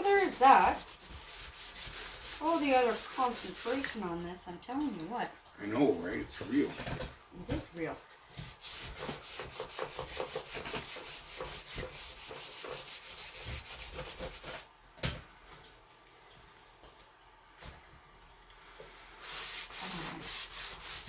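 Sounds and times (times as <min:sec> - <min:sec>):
sandpaper scuffing plastic: 0:00.0 - 0:04.0, 0:08.4 - 0:14.6, 0:19.2 - 0:21.0.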